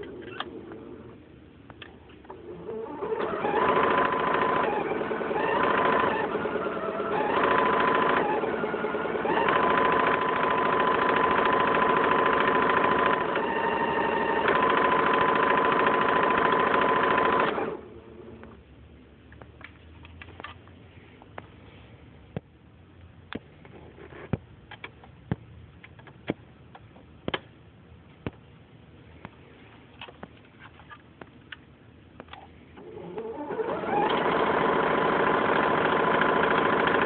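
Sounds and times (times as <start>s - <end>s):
sewing machine motor whine: 2.4s - 18.4s, 32.8s - 37.0s.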